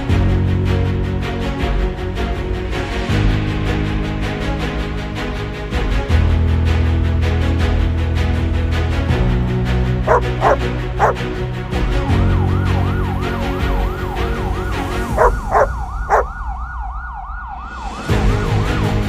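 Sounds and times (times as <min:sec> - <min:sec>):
background music: 0:00.0 - 0:16.4
dog barking: 0:10.1 - 0:11.2, 0:15.1 - 0:16.3
siren yelping: 0:10.1 - 0:11.2, 0:15.2 - 0:16.4.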